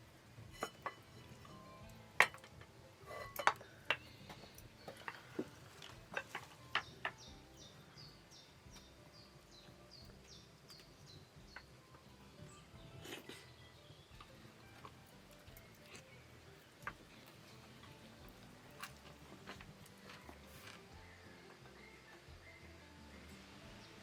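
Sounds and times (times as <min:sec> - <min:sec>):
sharp clinks and knocks: 0:00.5 - 0:07.3.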